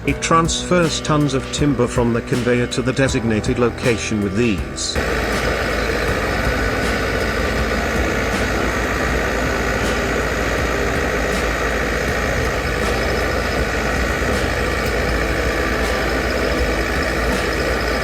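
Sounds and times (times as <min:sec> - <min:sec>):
heavy machine engine running: 0:05.0 - 0:18.0.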